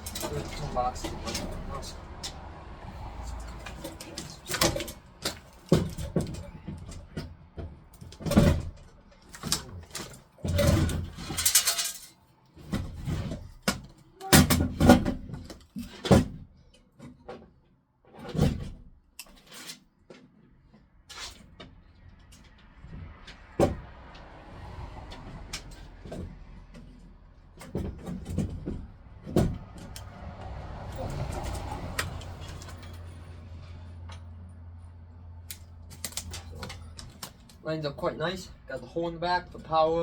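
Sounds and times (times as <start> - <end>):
tools and hardware clunking: 0.0 - 2.4, 3.0 - 17.4, 25.2 - 34.3, 35.5 - 38.1.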